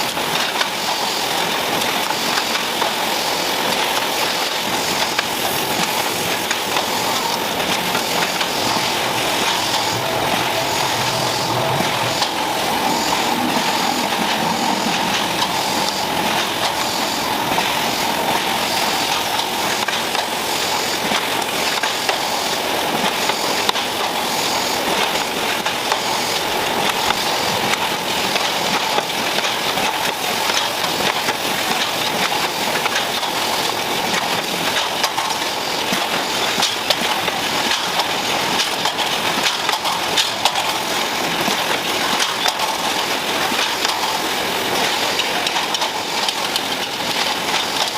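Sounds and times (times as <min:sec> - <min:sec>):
small mechanical clicks and clatters: 0:00.0 - 0:09.9, 0:15.8 - 0:47.9
production line machinery running: 0:00.0 - 0:47.9.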